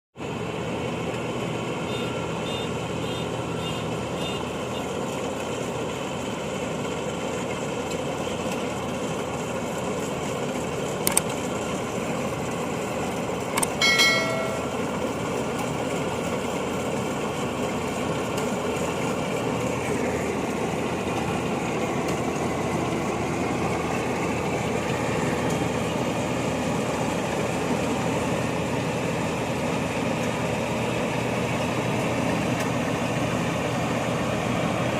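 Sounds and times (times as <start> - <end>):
harvester engine running: 0.2 - 34.9
sharp click: 13.6 - 14.5
brief high-pitched tone: 13.8 - 15.0.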